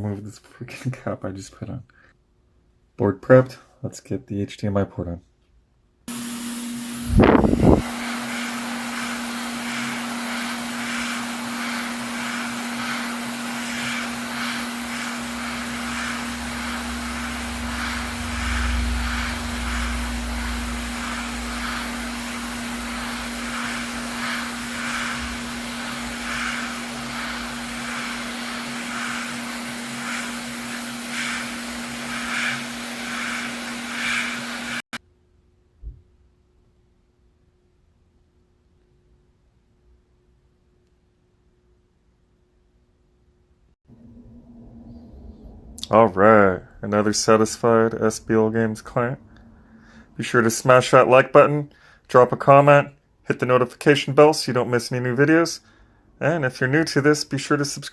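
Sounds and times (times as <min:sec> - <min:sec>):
small blower fan whooshing: 0:06.1 - 0:35.0.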